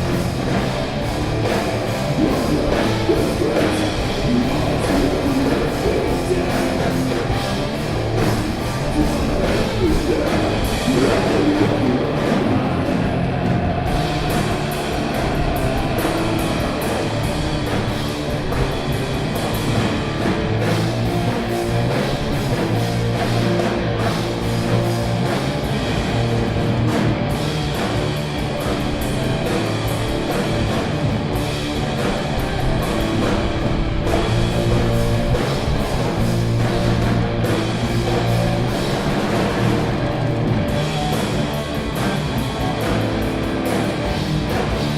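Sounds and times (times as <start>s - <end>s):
drum kit: 0.0s - 44.9s
heavy electric guitars: 0.0s - 44.9s
person singing: 2.1s - 7.7s, 8.7s - 17.3s.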